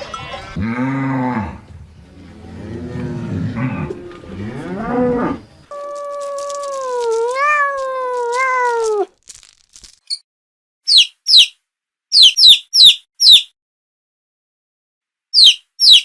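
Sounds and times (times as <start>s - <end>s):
cat meowing: 5.7s - 9.1s.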